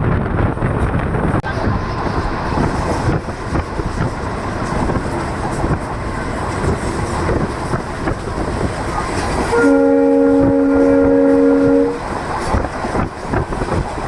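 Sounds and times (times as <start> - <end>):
train wheels clattering over rail joints: 1.7 - 14.0
locomotive horn chord: 9.5 - 12.0.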